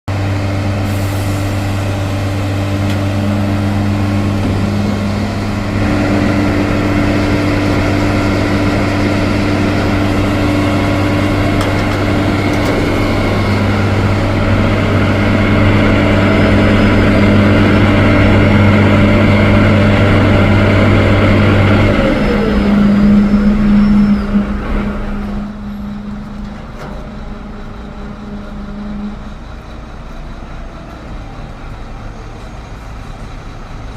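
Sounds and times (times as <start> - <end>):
concrete mixer running: 0.1 - 29.6.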